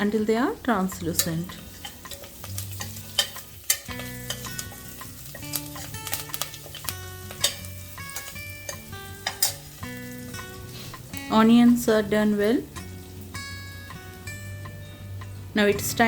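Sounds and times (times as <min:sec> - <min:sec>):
background music: 0:00.0 - 0:16.0
onions sizzling in oil: 0:00.0 - 0:16.0
spoon scraping metal pot: 0:01.2 - 0:11.1.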